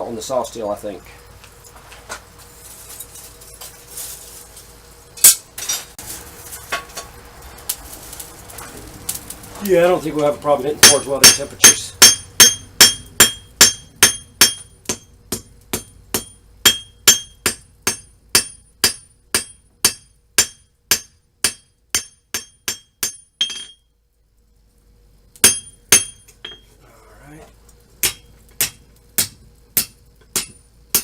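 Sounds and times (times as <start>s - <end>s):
hammer striking steel anvil: 10.8s - 23.8s, 25.4s - 26.7s, 28.0s - 31.0s.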